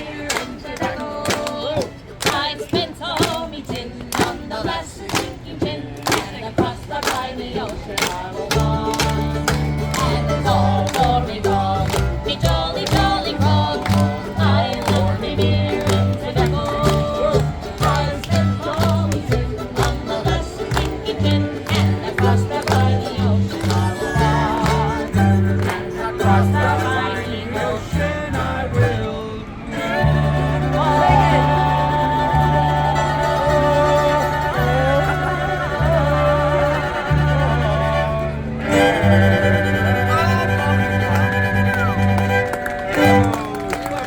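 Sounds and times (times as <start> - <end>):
live band playing strummed song: 8.0 - 29.1, 29.8 - 44.0
deep bass line: 8.5 - 27.2.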